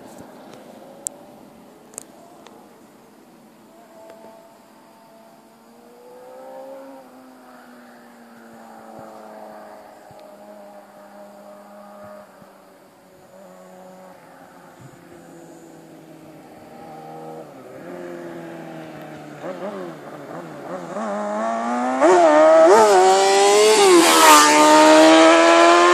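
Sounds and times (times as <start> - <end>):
motorcycle engine under way: 16.3 - 25.9.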